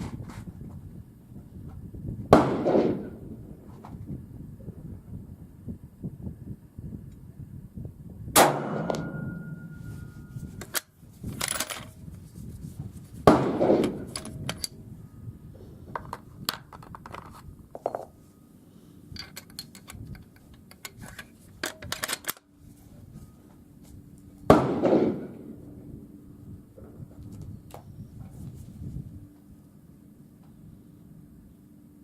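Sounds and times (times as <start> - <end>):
rifle shots: 2.4 - 3.2, 13.3 - 14.2, 24.5 - 25.4
rifle bolt clicking and clattering: 10.6 - 12.0, 13.6 - 14.8, 19.2 - 22.5.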